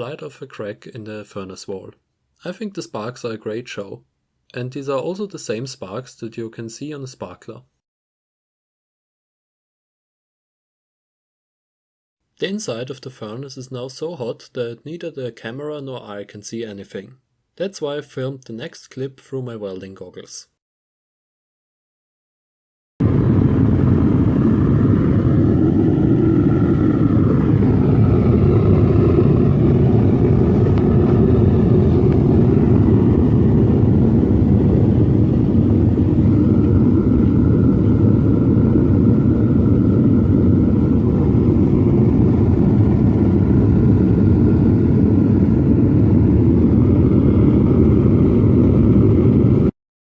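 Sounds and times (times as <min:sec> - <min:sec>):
propane burner roaring: 0:23.0 - 0:49.7.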